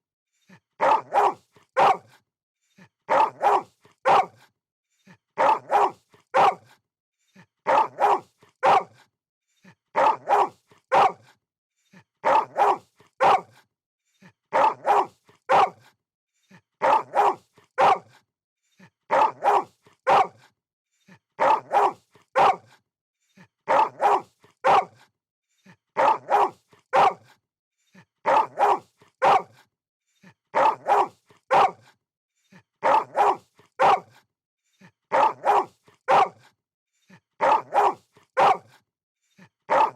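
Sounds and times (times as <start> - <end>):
dog barking: 0.8 - 2.1, 3.1 - 4.5, 5.4 - 6.8, 7.6 - 9.1, 10.0 - 11.4, 12.2 - 13.6, 14.5 - 15.9, 16.8 - 18.2, 19.1 - 20.5, 21.4 - 22.8, 23.7 - 25.0, 26.0 - 27.4, 28.2 - 29.7, 30.5 - 32.0, 32.8 - 34.2, 35.1 - 36.5, 37.4 - 38.8, 39.7 - 39.9.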